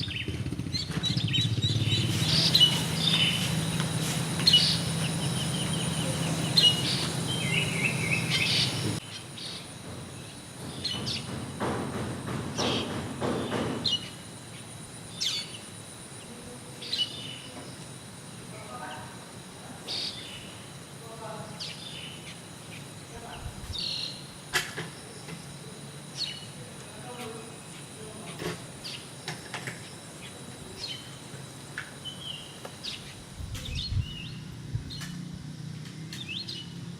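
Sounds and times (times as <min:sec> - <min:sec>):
wild birds chirping: 0:00.0 - 0:36.9
steady high whine: 0:01.2 - 0:12.0.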